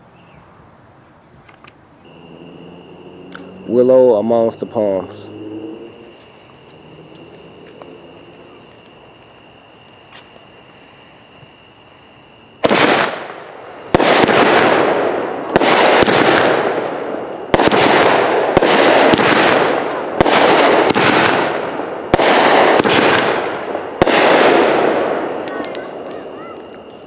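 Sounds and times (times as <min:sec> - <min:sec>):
fireworks hissing: 0:05.5 - 0:27.0
fireworks bursting with sharp bangs: 0:06.0 - 0:27.0.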